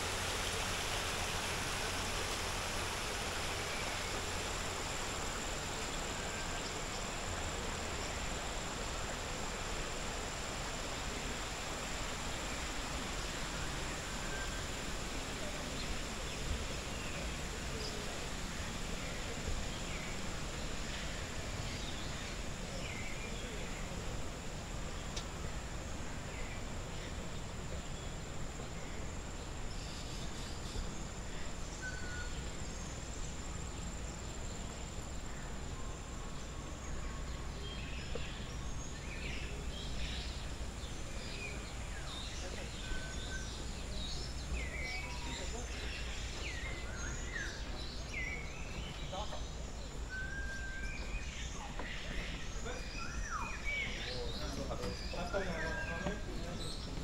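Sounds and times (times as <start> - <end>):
steady background hiss: 0.0 - 57.0.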